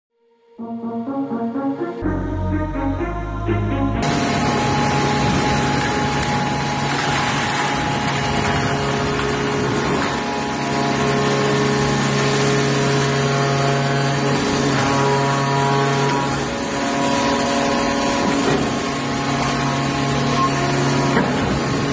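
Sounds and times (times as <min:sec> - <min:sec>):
music intro: 0:00.6 - 0:04.5
baler machine humming: 0:02.0 - 0:04.4.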